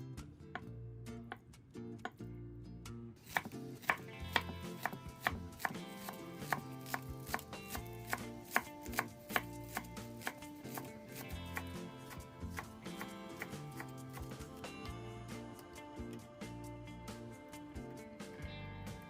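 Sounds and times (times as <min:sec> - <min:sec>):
background music: 0:00.0 - 0:19.0
knife chopping on cutting board: 0:03.2 - 0:14.6.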